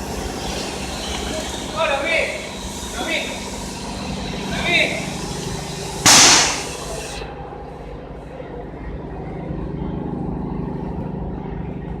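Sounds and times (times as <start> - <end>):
laser cutter hissing: 0.0 - 7.2
low machine hum: 0.0 - 12.0.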